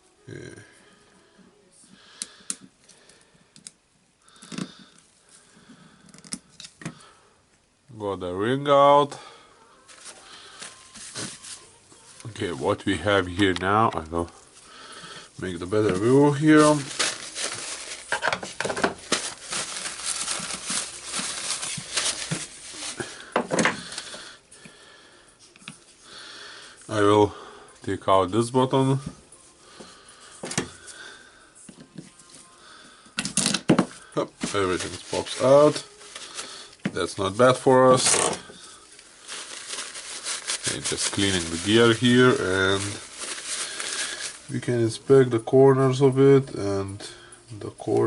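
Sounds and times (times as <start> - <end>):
hands rustling with parts: 9.9 - 24.6, 33.1 - 44.9
parts clattering: 15.7 - 24.2.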